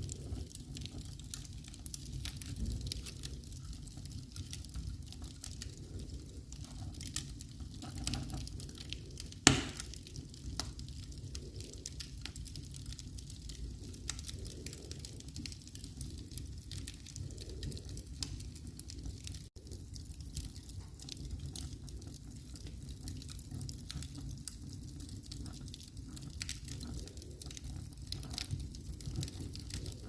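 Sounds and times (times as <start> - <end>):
wood fire crackling: 0.0 - 30.0
loud pop of fire: 9.4 - 10.0.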